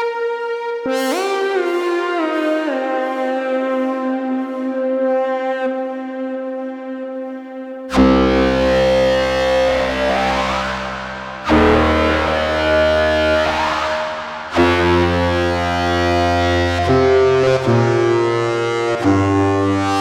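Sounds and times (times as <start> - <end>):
synthesizer chords with deep bass: 7.9 - 20.0.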